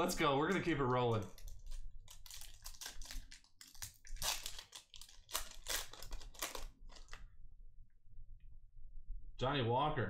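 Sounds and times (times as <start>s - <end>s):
foil pack tearing and crinkling: 1.4s - 7.2s.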